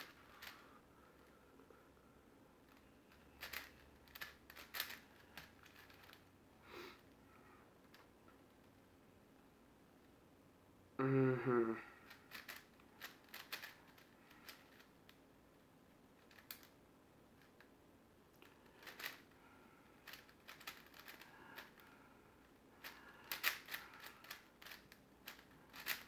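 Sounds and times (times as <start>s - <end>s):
puzzle cube clicking: 3.4s - 6.2s, 12.1s - 14.9s, 16.3s - 16.7s, 18.8s - 19.2s, 20.0s - 21.8s, 22.8s - 26.0s.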